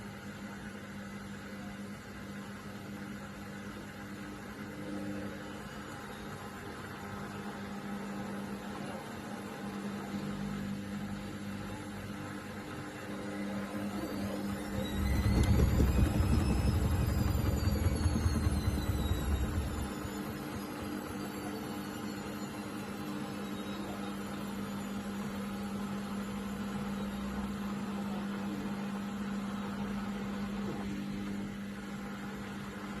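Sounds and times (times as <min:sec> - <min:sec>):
washing machine motor whine: 0:00.0 - 0:33.0
washing machine drum rumbling: 0:14.5 - 0:20.8.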